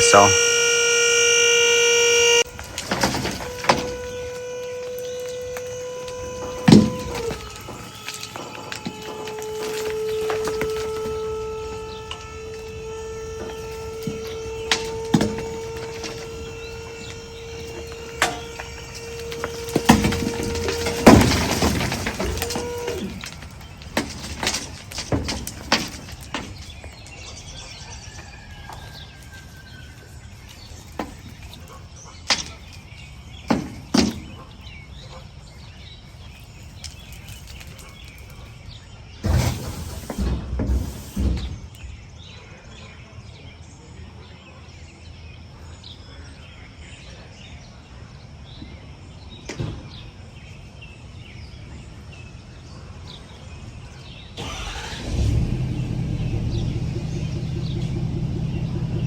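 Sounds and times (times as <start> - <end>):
sharp knocks and clunks: 33.5 - 34.4.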